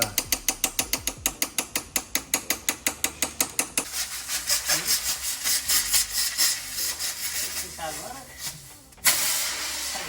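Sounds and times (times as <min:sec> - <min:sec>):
rhythmic rubbing and scraping: 0:00.0 - 0:01.4, 0:03.8 - 0:08.6
ratchet-like clicks: 0:00.0 - 0:03.9.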